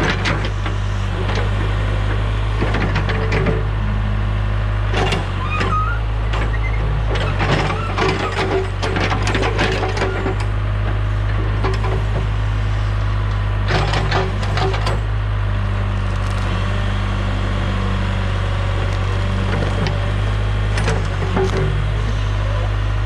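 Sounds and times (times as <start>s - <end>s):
diesel engine running: 0.0s - 23.0s
wood cracking and splintering: 15.9s - 16.6s.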